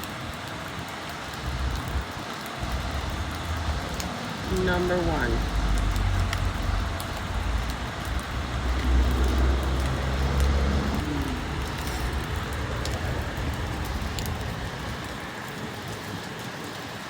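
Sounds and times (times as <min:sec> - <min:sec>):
steady rain falling: 0:00.0 - 0:17.0
wind rumbling on microphone: 0:00.0 - 0:17.0.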